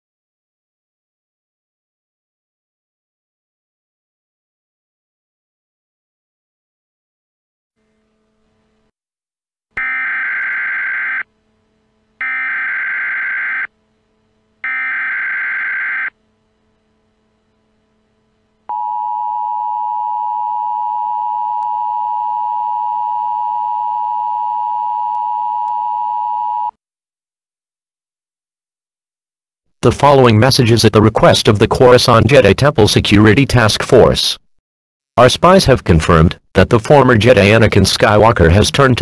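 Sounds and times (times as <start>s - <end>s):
rapid digital data tones: 12.2s - 13.7s.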